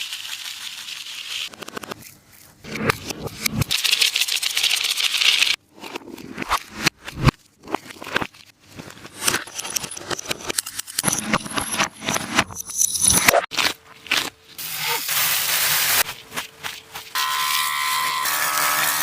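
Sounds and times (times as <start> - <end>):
tape-covered squishy crackling: 13.5 - 15.1.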